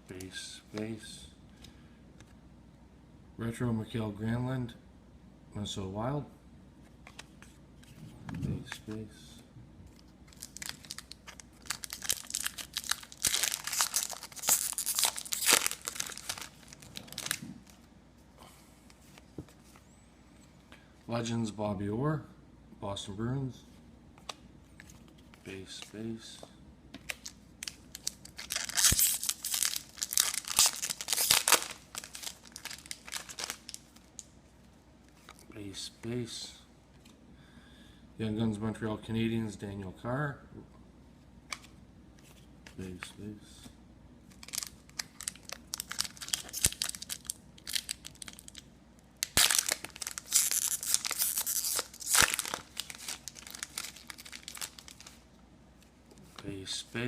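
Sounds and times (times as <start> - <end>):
foil wrapper tearing and crinkling: 10.3 - 17.4, 27.1 - 34.0, 44.3 - 48.6, 49.2 - 55.2.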